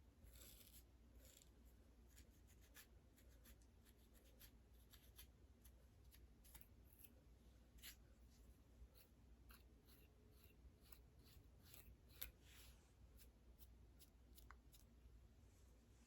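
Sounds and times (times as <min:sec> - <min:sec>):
fingernails scratching scalp: 0:00.3 - 0:01.5, 0:08.9 - 0:14.9.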